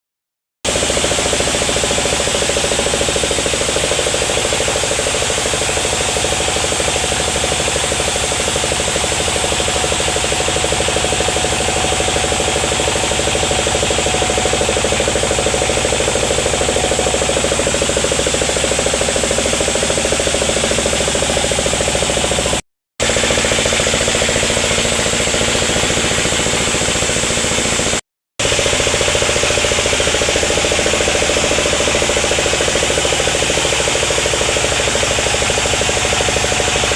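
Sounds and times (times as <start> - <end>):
sawmill machinery sawing wood: 0.7 - 36.9.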